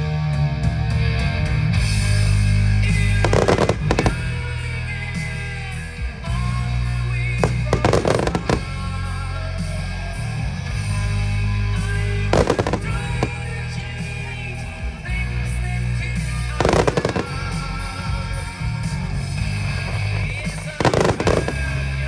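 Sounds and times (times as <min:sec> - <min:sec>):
firework bangs and crackles: 0:02.9 - 0:05.4, 0:07.2 - 0:09.9, 0:10.7 - 0:14.6, 0:16.0 - 0:22.0
loud music: 0:03.3 - 0:04.4, 0:07.4 - 0:08.8, 0:12.4 - 0:13.5, 0:16.6 - 0:17.7, 0:20.5 - 0:21.7.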